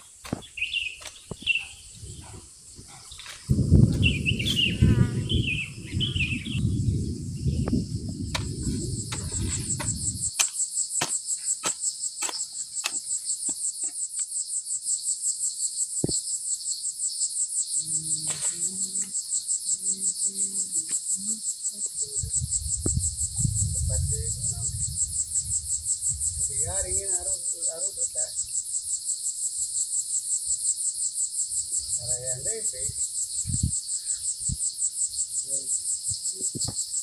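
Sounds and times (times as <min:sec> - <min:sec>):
insects shrilling in a pulse: 0:00.0 - 0:37.0
low rumbling noise: 0:03.5 - 0:10.3, 0:22.2 - 0:27.3.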